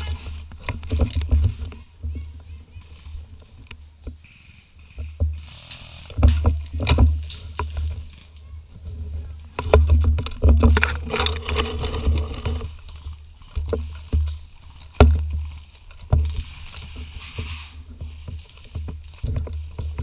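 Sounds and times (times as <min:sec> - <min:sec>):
sharp clicks and knocks: 0:00.0 - 0:02.2, 0:03.0 - 0:08.2, 0:09.5 - 0:20.0
low rumbling and bumping: 0:05.0 - 0:20.0.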